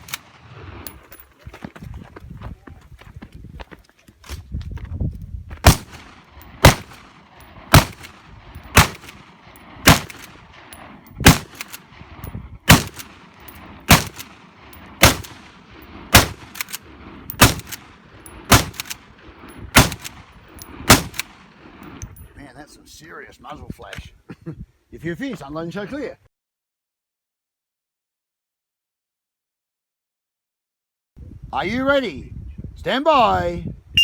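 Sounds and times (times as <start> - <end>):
rifle shots with echo: 0.0 - 0.8, 5.6 - 22.0.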